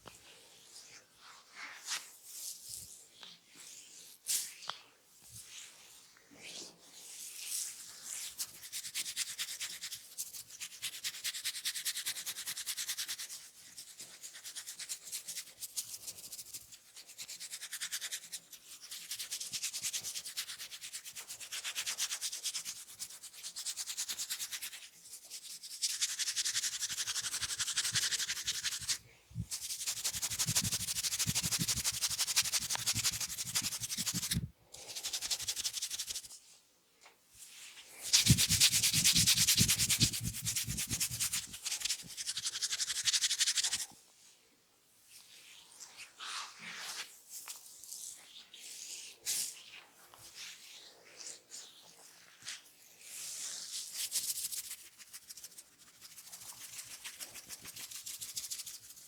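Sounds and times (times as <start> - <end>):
fingers scratching through hair: 25.8 - 36.4, 38.0 - 43.8, 53.5 - 59.0.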